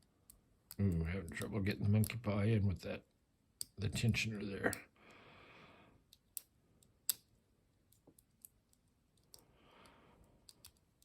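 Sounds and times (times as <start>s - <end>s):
soft breathing: 4.9s - 6.1s, 9.3s - 10.8s.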